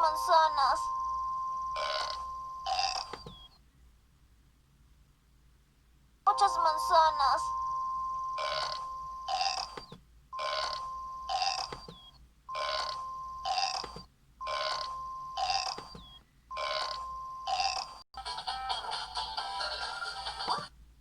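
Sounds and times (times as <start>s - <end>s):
recorded burp sound: 1.8s - 3.2s, 8.4s - 9.8s, 10.4s - 11.8s, 12.5s - 15.8s, 16.6s - 18.0s.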